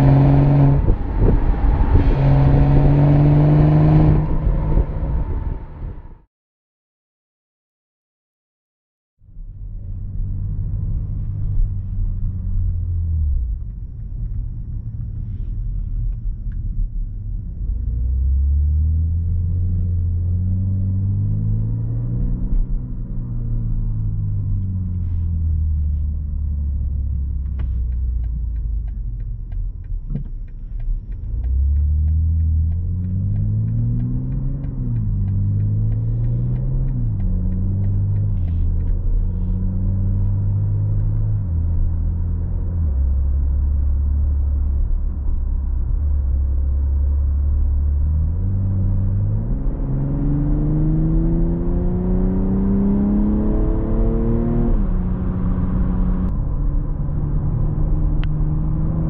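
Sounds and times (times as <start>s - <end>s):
car engine revving: 0.0s - 6.2s, 17.4s - 59.0s
faint regular ticks: 27.1s - 39.5s.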